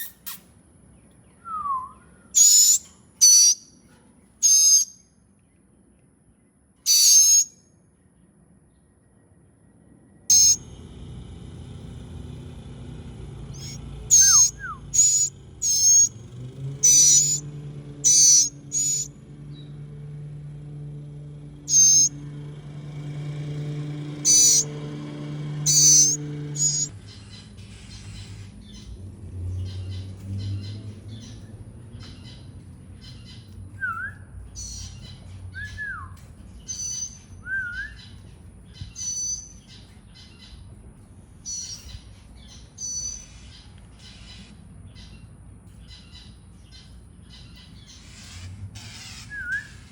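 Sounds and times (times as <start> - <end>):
nestling birds calling shrilly: 1.9 - 3.8, 4.4 - 5.0, 6.9 - 7.6, 10.3 - 40.7, 41.4 - 49.9
steady low hum: 9.1 - 30.2.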